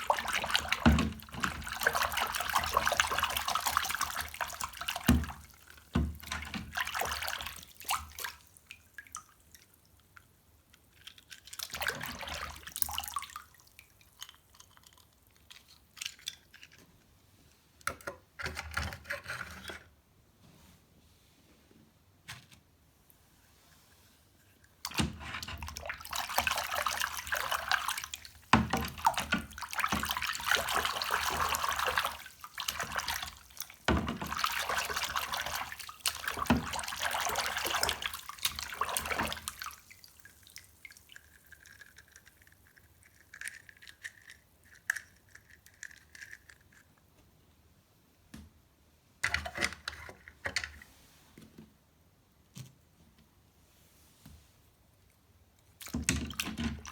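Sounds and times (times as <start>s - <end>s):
tap water running and splashing: 0.0s - 9.2s, 11.6s - 13.8s, 24.9s - 42.3s.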